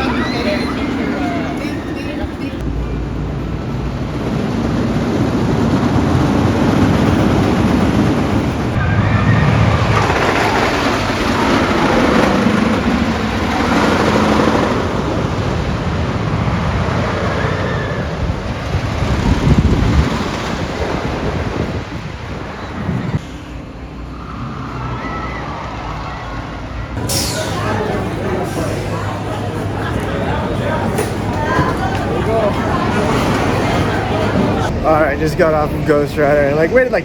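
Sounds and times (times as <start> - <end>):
wind rushing over microphone: 0.0 - 23.2
roller coaster train rumbling on track: 0.0 - 37.0.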